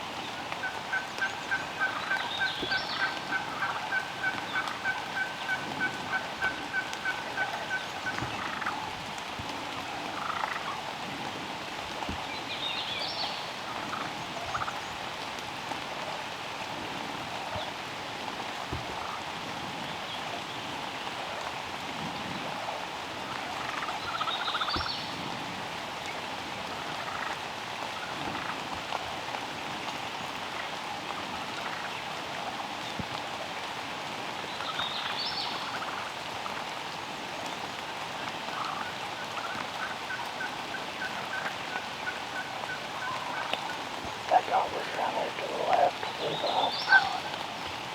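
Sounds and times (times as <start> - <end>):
steady rain: 0.0 - 47.9
turkey gobbling: 0.6 - 8.8, 10.2 - 10.8, 13.8 - 14.7, 23.6 - 24.9, 27.0 - 27.4, 35.6 - 36.1, 38.5 - 47.4.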